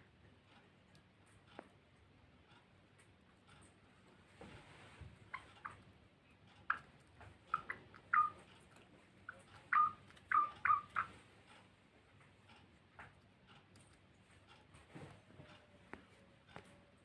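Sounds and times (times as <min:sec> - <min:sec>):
finches chirping: 0:07.5 - 0:08.4, 0:09.2 - 0:11.1.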